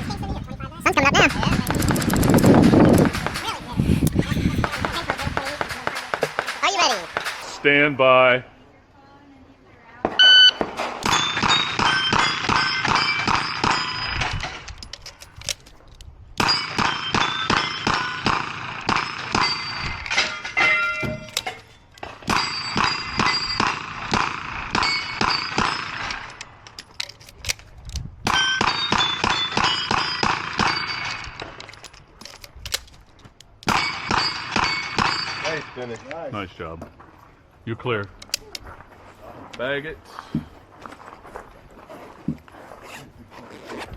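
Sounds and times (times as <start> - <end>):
steel plates ringing: 19.0 - 23.7.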